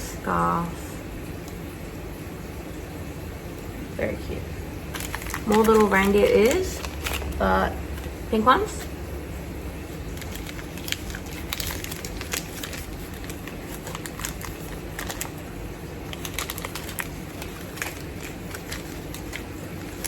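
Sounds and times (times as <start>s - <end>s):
packaging crinkling and clicking: 4.9s - 8.2s, 10.0s - 20.0s.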